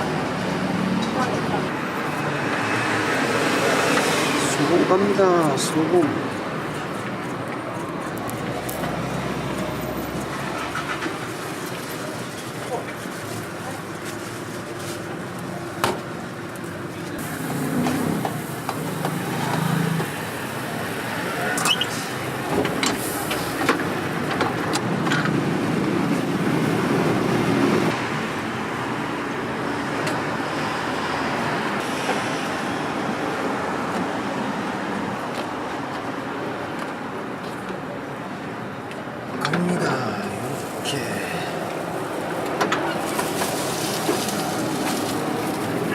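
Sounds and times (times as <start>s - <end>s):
road traffic passing: 0.0s - 45.9s.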